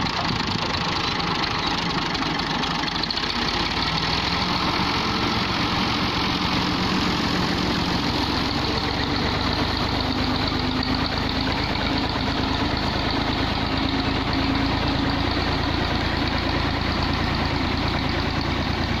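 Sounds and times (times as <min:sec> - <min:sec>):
tractor diesel engine chugging: 0:00.0 - 0:19.0.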